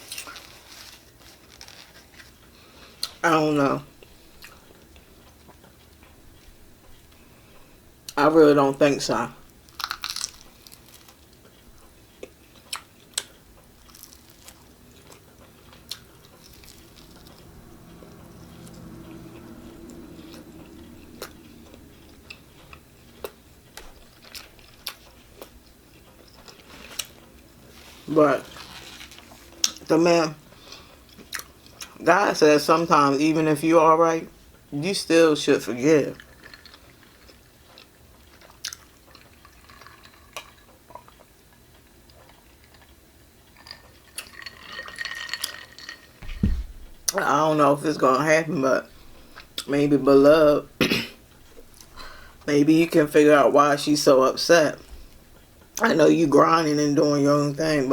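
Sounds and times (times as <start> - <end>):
person chewing with mouth clicks: 2.9 - 3.2, 9.7 - 29.9, 30.5 - 32.0, 36.2 - 46.0.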